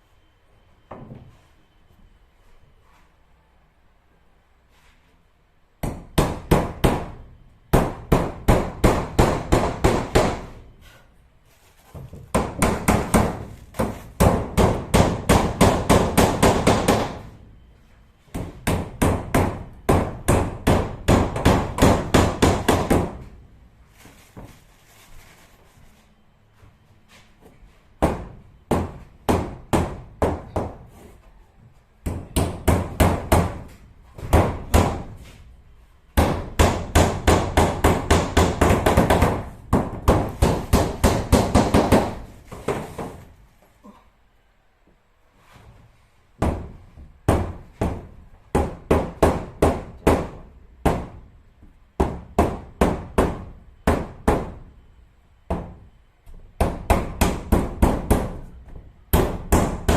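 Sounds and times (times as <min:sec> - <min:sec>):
hammer driving nails: 0:12.3 - 0:17.3, 0:36.2 - 0:43.2.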